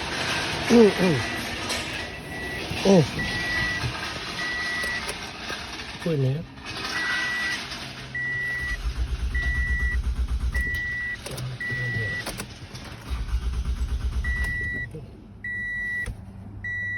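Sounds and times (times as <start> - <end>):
starter cranking engine: 0.0 - 15.0
dashboard warning chime beeping: 0.7 - 5.2, 8.2 - 12.4, 14.2 - 16.9.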